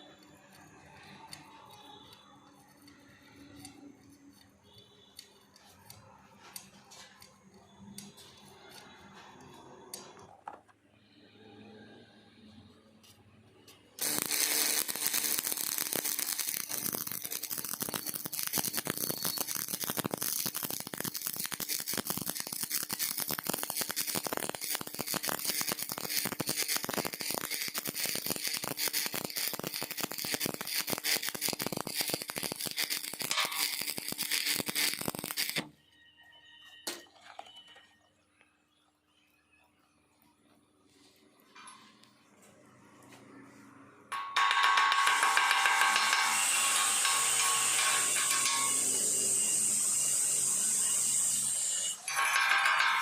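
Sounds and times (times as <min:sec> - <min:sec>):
welding arc crackle and sizzle: 0:00.8 - 0:09.2, 0:13.7 - 0:35.7, 0:44.4 - 0:53.0.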